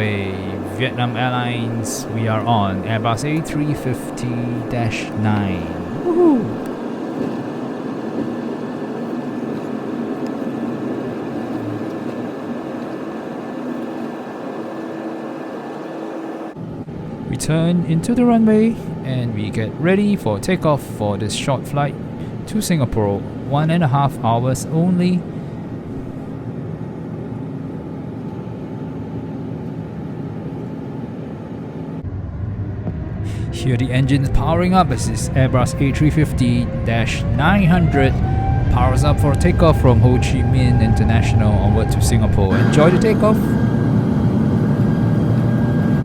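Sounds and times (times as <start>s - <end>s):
aircraft cabin rumble: 0.0s - 17.2s, 18.3s - 46.0s
faint steady whine: 0.0s - 46.0s.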